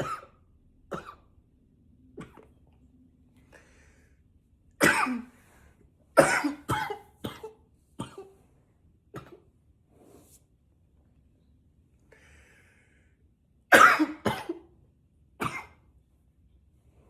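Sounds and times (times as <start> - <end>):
man coughing: 0.0 - 1.2, 4.8 - 5.3, 6.2 - 8.3, 13.7 - 14.6.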